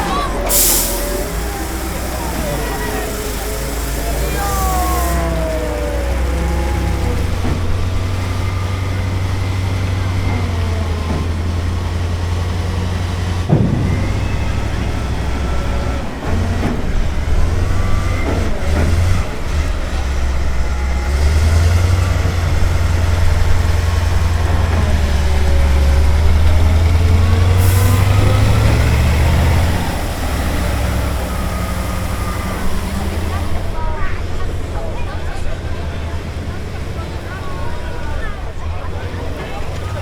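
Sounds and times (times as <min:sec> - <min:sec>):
faint whines shifting pitch: 0:00.0 - 0:10.4
heavy diesel engine rumbling: 0:00.0 - 0:40.0.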